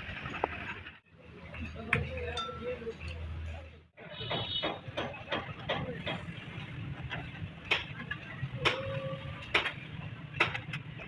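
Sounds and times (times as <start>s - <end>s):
sharp metallic knocks: 4.2s - 6.5s.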